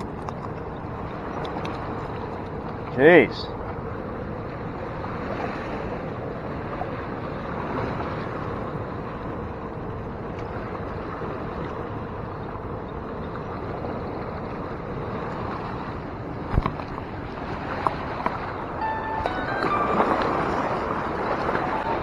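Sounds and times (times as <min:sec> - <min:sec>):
wind: 0:00.0 - 0:22.0
fast-flowing river rushing: 0:16.5 - 0:22.0.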